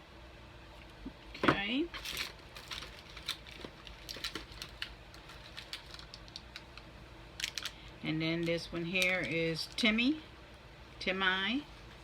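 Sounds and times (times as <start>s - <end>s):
plastic wrappers crinkling: 1.9s - 10.1s.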